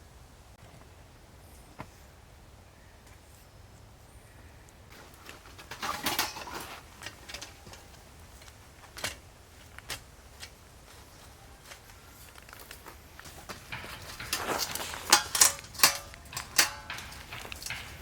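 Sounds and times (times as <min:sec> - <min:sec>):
rustling of handled objects: 0:04.9 - 0:18.0.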